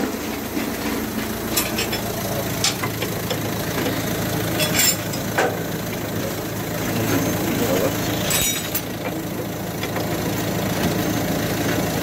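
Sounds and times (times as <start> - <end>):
metallic tool clinks: 4.6 - 5.3, 8.2 - 8.9.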